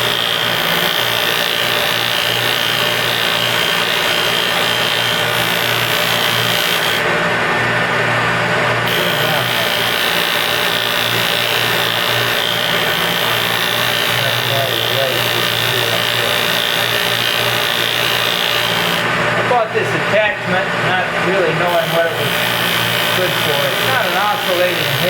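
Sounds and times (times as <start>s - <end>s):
machine hum: 0.0s - 25.0s
sanding drum grinding hiss: 8.9s - 19.1s, 21.6s - 25.0s.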